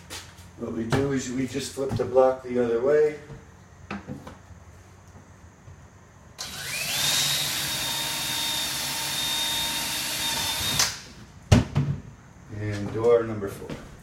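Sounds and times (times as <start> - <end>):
electric drill whining: 6.4 - 11.0.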